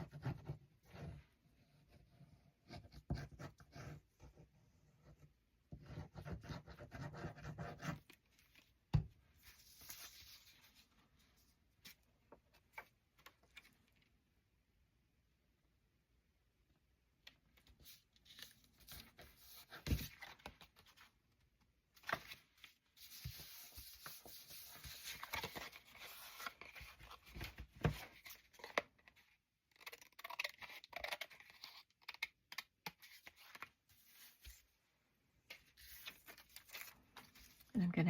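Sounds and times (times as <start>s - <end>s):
paper rustling and scraping: 35.5s - 37.7s.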